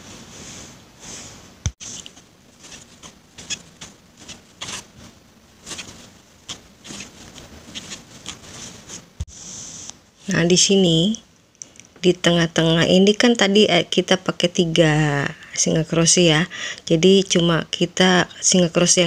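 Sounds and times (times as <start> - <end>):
yarn squeaking and rustling: 1.8 - 9.2.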